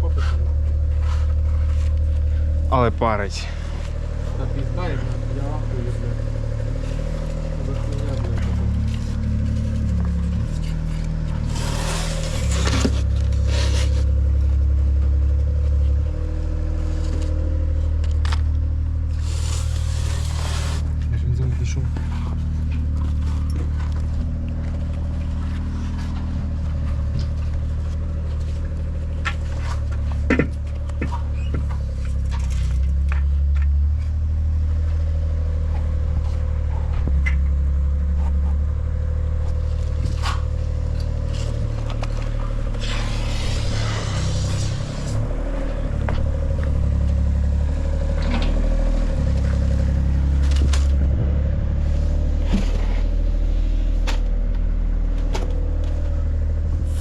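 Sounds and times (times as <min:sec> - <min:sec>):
engine running: 0:00.0 - 0:57.0
knocks and scrapes: 0:06.8 - 0:14.3, 0:19.0 - 0:21.1, 0:48.0 - 0:54.3.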